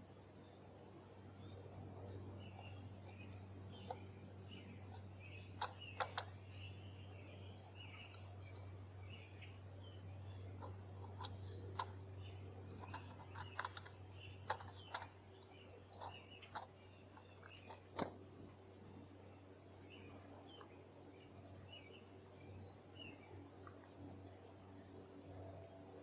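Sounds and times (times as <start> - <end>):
steady low hum: 0.0 - 26.0
soft bird chirps: 0.2 - 26.0
birds pecking clicks and taps: 1.9 - 6.7, 7.3 - 9.3, 10.3 - 18.6, 20.4 - 20.8.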